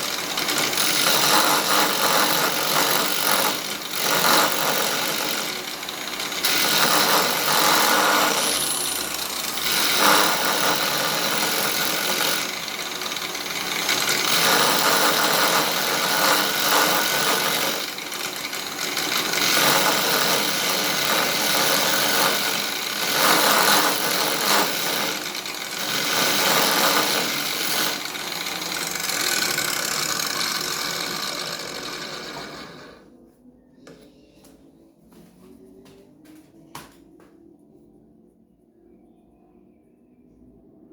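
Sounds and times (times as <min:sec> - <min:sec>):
angle grinder motor whine: 0:00.0 - 0:33.0
harsh scraping on sanding disc: 0:00.0 - 0:33.0.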